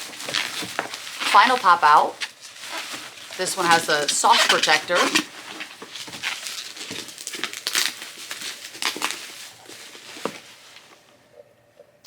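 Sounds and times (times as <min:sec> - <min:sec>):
plastic sleeve crinkling: 0:00.0 - 0:11.1.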